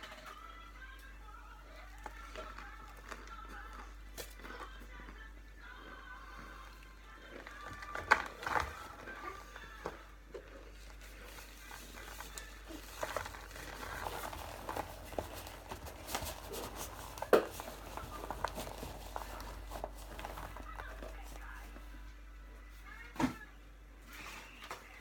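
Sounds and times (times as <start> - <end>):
cornstarch crunching: 10.4 - 21.9.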